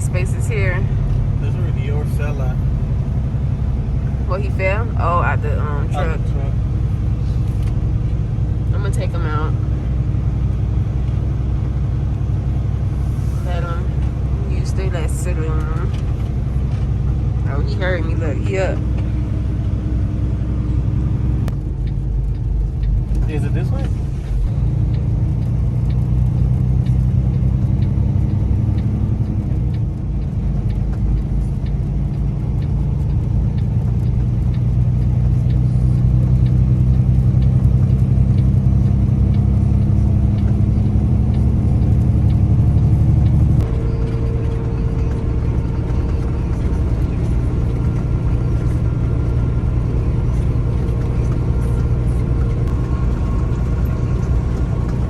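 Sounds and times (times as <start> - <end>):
diesel truck engine drone: 0.0 - 55.0.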